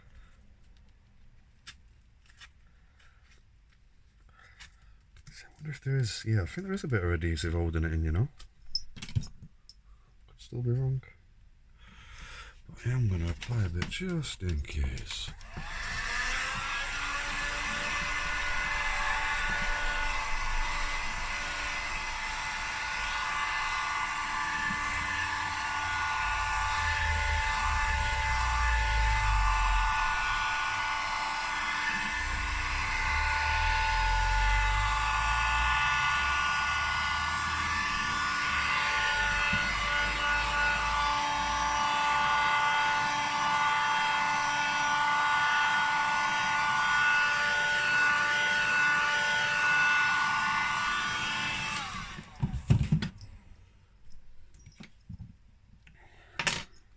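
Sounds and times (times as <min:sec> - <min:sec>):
hot-air blower motor whine: 0:15.3 - 0:52.9
low rumble: 0:26.0 - 0:31.1.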